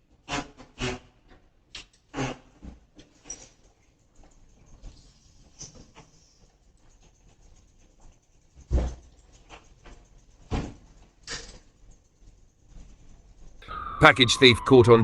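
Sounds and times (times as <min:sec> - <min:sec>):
faint clicks and rustles: 0:03.0 - 0:13.6.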